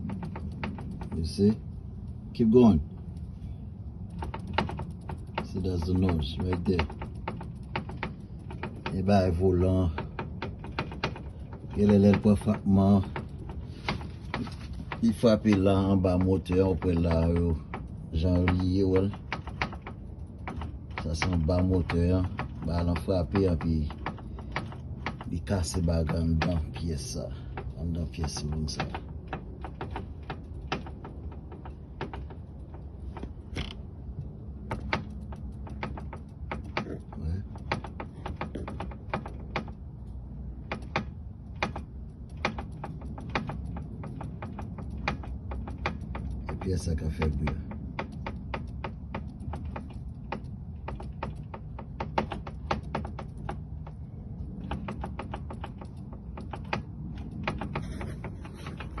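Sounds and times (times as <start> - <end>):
steady low hum: 0.0 - 59.0
steering rack clicking and knocking: 0.0 - 59.0.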